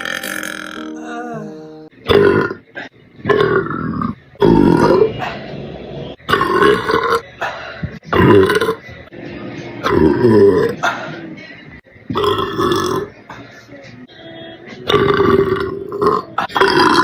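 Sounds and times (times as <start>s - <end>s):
woman belching: 0.0s - 1.0s, 2.0s - 5.2s, 6.3s - 7.2s, 8.1s - 8.8s, 9.8s - 10.8s, 12.1s - 13.2s, 14.8s - 17.0s.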